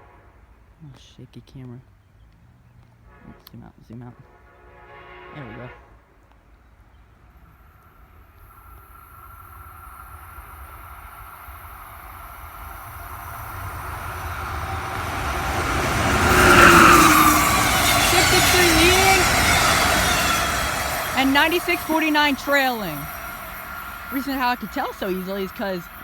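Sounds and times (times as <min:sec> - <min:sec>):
train rushing past: 0:07.2 - 0:26.0.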